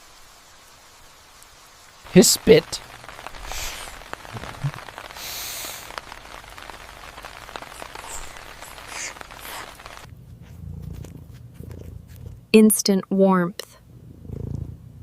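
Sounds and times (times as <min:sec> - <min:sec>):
rain pattering: 0:00.0 - 0:10.1
cat purring: 0:10.5 - 0:12.5, 0:14.1 - 0:15.0.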